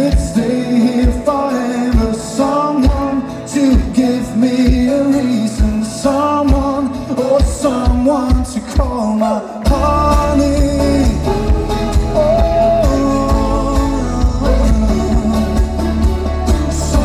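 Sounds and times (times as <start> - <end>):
folk-rock band playing: 0.0 - 17.0
melodic guitar lines: 0.0 - 17.0
heavy bass: 9.7 - 17.0.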